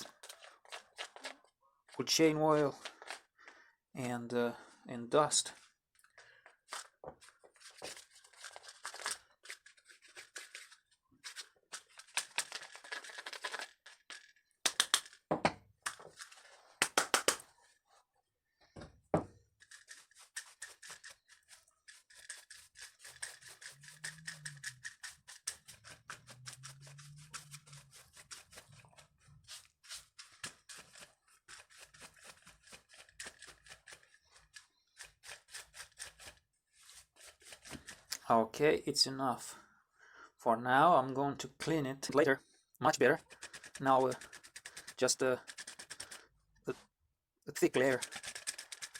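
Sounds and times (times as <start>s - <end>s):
stiff brush scrubbing: 19.6s - 38.3s, 43.0s - 46.2s, 47.6s - 48.9s.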